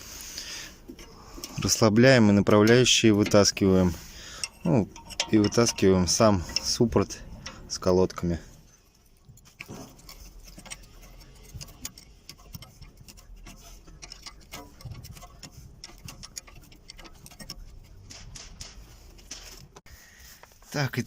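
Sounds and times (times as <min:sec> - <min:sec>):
small metallic ticks: 0:00.0 - 0:20.5
socket ratchet clicking: 0:08.9 - 0:19.5.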